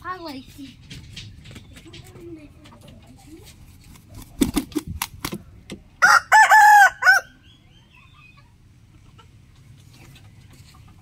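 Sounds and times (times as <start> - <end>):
rooster crowing: 6.0 - 7.4.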